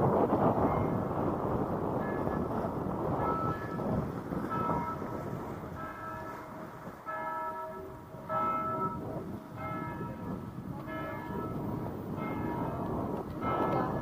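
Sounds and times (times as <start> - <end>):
church bell tolling: 0.7 - 1.0, 3.2 - 14.0.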